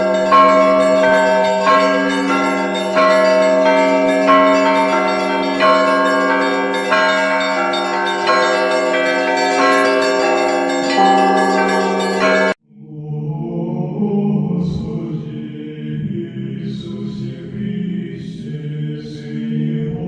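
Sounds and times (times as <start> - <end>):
church bells ringing: 0.0 - 12.6.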